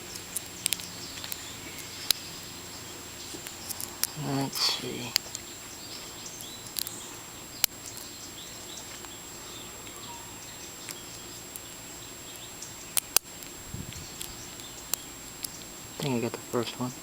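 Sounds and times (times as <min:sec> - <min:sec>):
sharp metallic clicks: 0:00.0 - 0:02.3, 0:06.3 - 0:07.0
steady hiss: 0:00.0 - 0:17.0.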